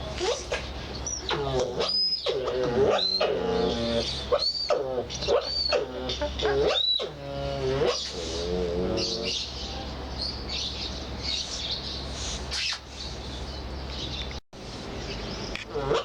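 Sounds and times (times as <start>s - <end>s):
steady low hum: 0.0s - 16.0s
otters squeaking: 0.2s - 9.6s.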